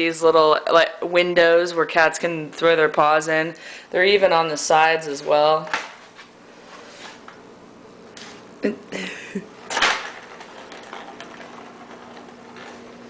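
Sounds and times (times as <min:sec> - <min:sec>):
ball rattling in plastic track: 0:09.7 - 0:13.0.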